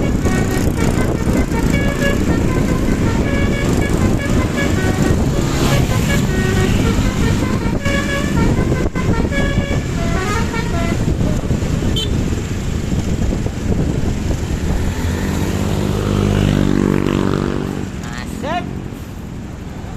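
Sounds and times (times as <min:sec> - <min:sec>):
bus horn playing a melody: 0:00.0 - 0:12.2
bus engine rumbling: 0:00.0 - 0:19.9.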